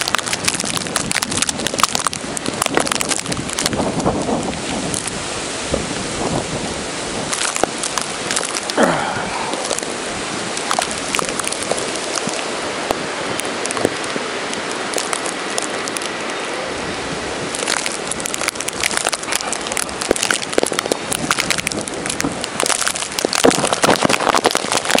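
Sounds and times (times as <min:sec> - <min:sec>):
crackling ticks: 0:00.0 - 0:05.1, 0:07.3 - 0:08.9, 0:10.6 - 0:16.1, 0:17.5 - 0:25.0
wind and blowing snow hiss: 0:00.0 - 0:25.0.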